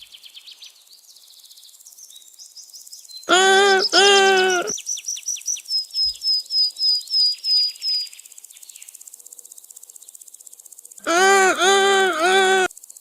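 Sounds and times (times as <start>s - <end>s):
loud pitched call: 3.3s - 4.7s, 11.1s - 12.7s.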